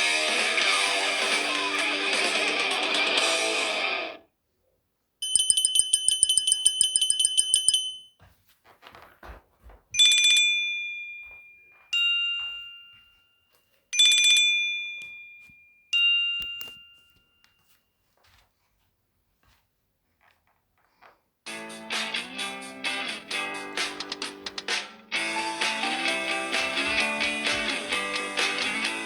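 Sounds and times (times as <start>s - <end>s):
two-tone ringtone chime: 5.2s - 8.1s, 10.0s - 17.7s, 25.2s - 29.0s.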